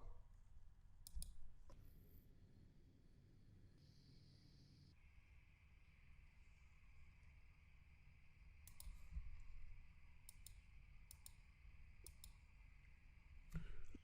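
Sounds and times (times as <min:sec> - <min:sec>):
computer mouse clicks: 0:01.0 - 0:01.8, 0:08.6 - 0:09.2, 0:10.2 - 0:12.5.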